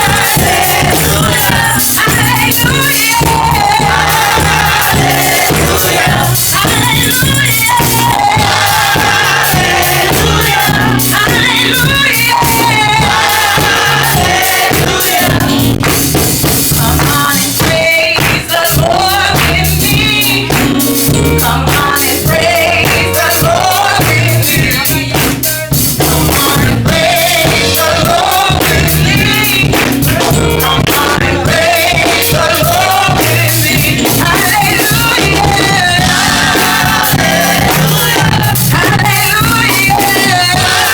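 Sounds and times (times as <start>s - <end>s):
choir singing: 0.0s - 15.8s, 21.2s - 25.1s, 26.1s - 40.9s
band with drums: 0.0s - 40.9s.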